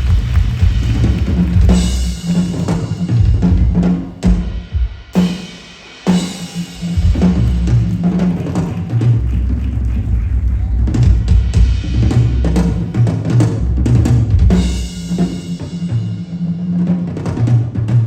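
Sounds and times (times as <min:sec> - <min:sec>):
drum kit playing: 0:00.0 - 0:18.0.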